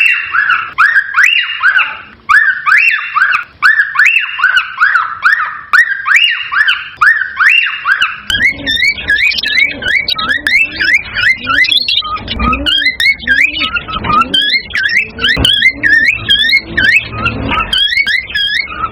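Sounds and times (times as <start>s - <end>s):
cockatiel whistled calls: 0.0s - 18.9s.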